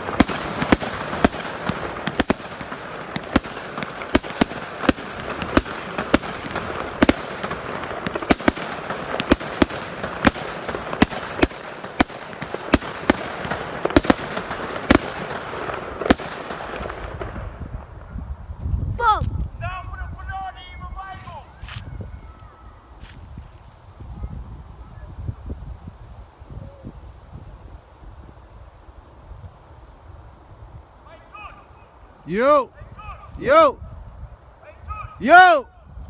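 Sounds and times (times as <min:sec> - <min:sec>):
firework bangs: 0:00.0 - 0:18.1
firework crackling: 0:00.0 - 0:19.5.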